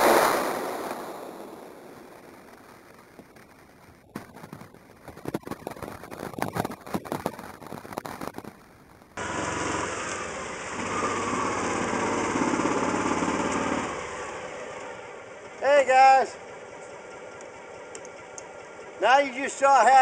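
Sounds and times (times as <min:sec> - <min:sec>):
clicking and crackling: 0:02.1 - 0:09.2, 0:17.4 - 0:18.5
small engine running: 0:09.2 - 0:19.9.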